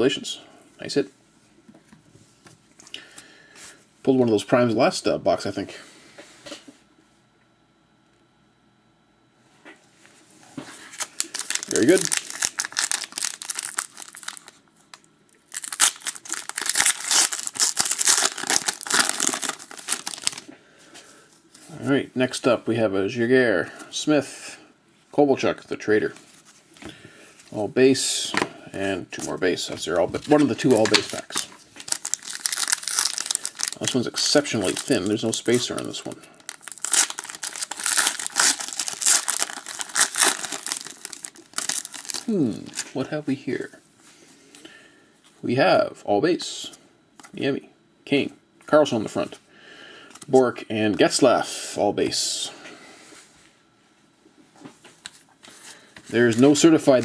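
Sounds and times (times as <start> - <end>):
wrapper crinkling and tearing: 10.9 - 20.5, 30.2 - 43.0.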